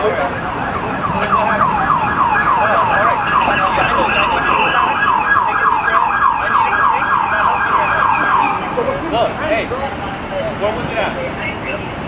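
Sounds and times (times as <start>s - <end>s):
siren yelping: 0.0s - 8.9s.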